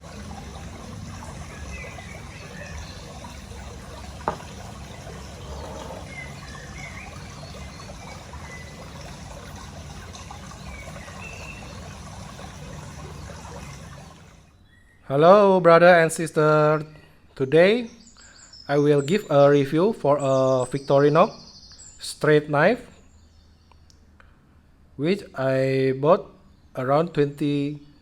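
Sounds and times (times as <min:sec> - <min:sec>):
trickling water: 0:00.0 - 0:14.6.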